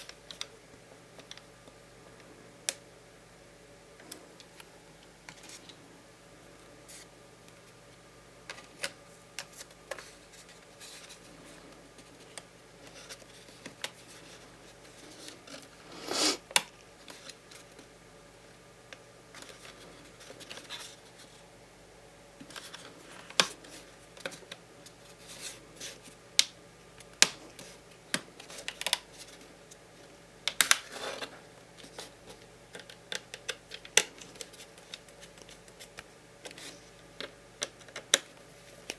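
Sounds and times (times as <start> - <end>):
faint steady hum: 0.0 - 38.9
short scrapes on laptop: 15.8 - 16.4.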